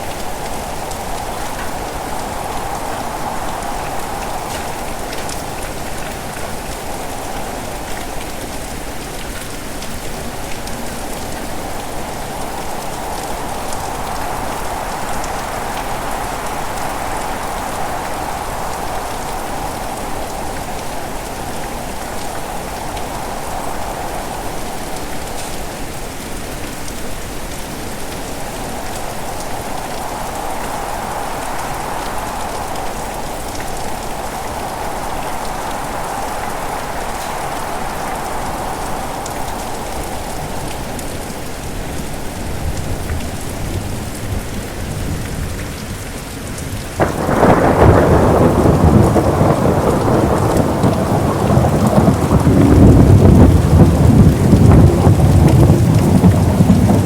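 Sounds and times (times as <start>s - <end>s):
heavy rain: 0.0s - 57.0s
loud thunder clap: 47.0s - 57.0s
thunder rumbling: 47.0s - 57.0s.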